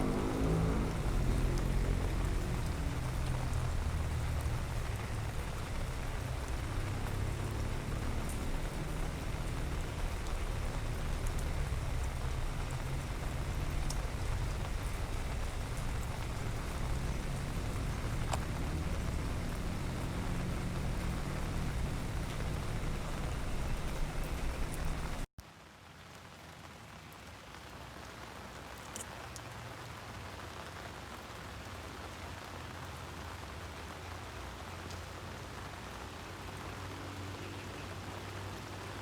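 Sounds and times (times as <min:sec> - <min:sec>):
faint drip ticks: 0:00.0 - 0:25.3, 0:28.8 - 0:29.6, 0:34.8 - 0:35.1
low rumble: 0:00.0 - 0:25.3
rain falling: 0:00.0 - 0:39.0.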